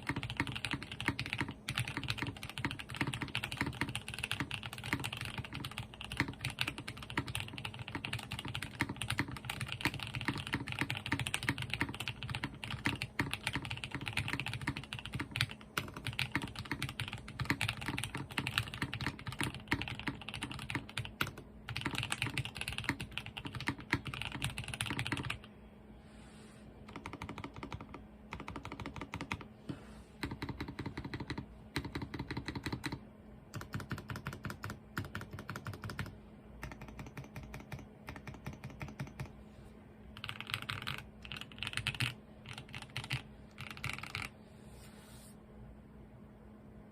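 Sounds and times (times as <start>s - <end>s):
mechanical keyboard typing: 0.0s - 25.5s, 26.8s - 29.5s, 30.2s - 39.3s, 40.2s - 44.3s.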